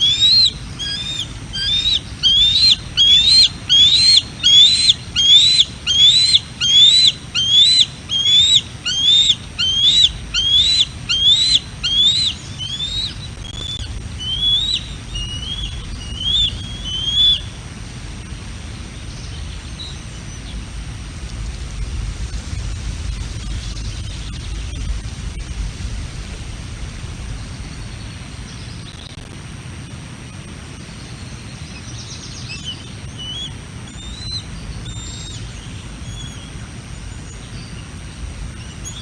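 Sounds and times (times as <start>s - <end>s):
eagle whistled calls: 0.0s - 17.6s, 31.8s - 38.0s, 38.6s - 39.0s
low wind rumble: 0.0s - 39.0s.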